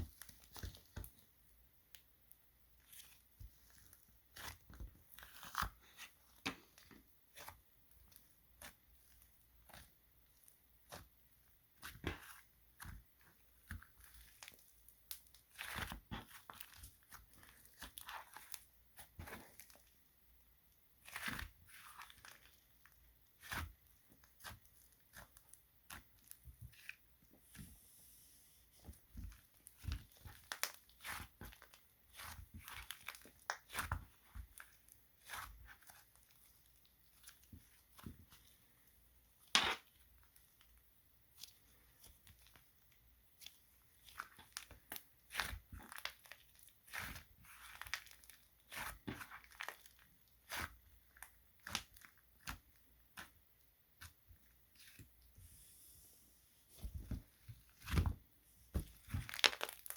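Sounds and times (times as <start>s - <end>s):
crinkly material tearing: 59.2s - 59.9s.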